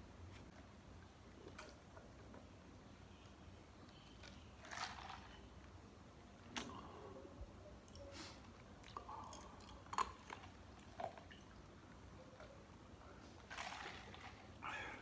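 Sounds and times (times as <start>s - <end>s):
person chewing food: 7.9s - 12.0s.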